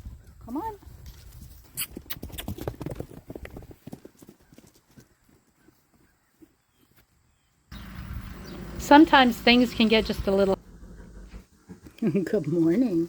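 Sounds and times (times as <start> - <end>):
horse hooves clip-clopping: 0.0 - 7.1.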